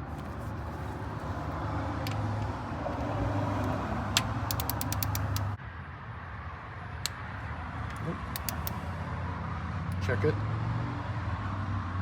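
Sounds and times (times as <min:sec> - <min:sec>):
ratchet wrench clicking: 0:03.6 - 0:05.6, 0:08.3 - 0:08.8.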